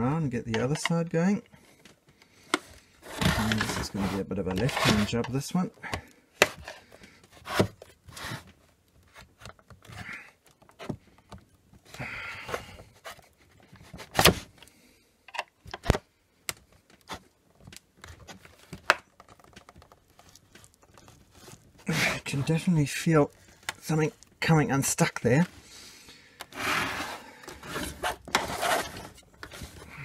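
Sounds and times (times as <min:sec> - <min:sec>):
screwdriver scraping plastic: 0:02.5 - 0:05.4, 0:18.0 - 0:24.4, 0:26.4 - 0:30.0.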